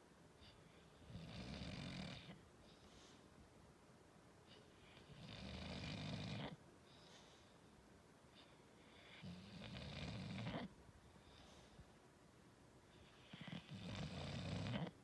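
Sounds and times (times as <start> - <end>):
faint breathing: 0.3 - 1.2, 2.2 - 3.5, 6.4 - 9.5, 10.4 - 12.1
dog snoring: 1.0 - 2.8, 4.8 - 7.2, 8.9 - 10.7, 13.0 - 15.0.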